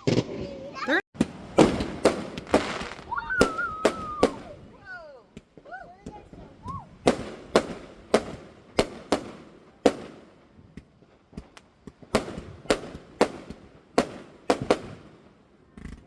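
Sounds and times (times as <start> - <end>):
distant fireworks pops: 0.0 - 16.0
fireworks banging: 0.0 - 16.0.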